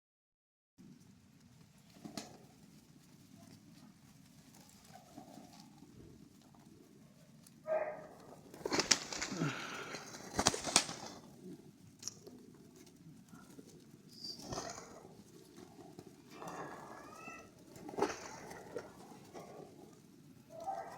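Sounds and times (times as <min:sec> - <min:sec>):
pigeons cooing: 0:04.5 - 0:20.9.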